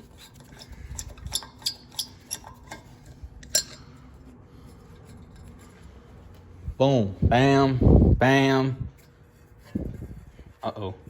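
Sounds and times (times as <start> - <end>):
metallic clicks of tools: 0.4 - 3.9.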